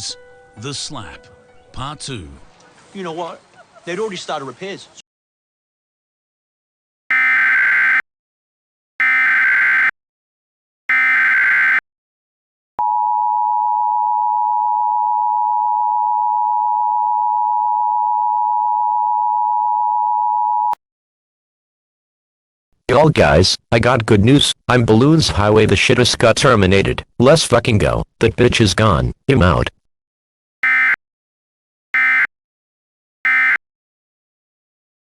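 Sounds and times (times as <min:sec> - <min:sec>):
two-tone attention signal: 0:07.1 - 0:08.0, 0:09.0 - 0:09.9, 0:10.9 - 0:11.8, 0:30.6 - 0:31.0, 0:32.0 - 0:32.3, 0:33.3 - 0:33.6
warbling data tone bursts: 0:07.1 - 0:08.0, 0:09.0 - 0:09.9, 0:10.9 - 0:11.8, 0:32.0 - 0:32.3, 0:33.3 - 0:33.6.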